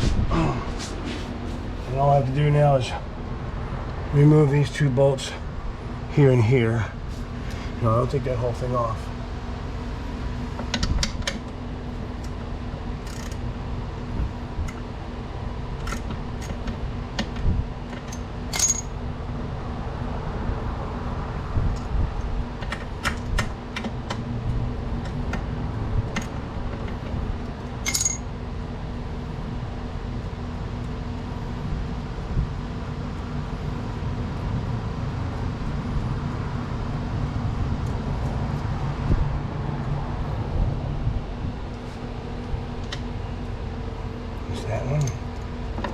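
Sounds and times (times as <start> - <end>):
steady low hum: 0.0 - 45.9
metal tools clinking on bolts: 18.0 - 18.9, 27.8 - 28.3, 45.0 - 45.3.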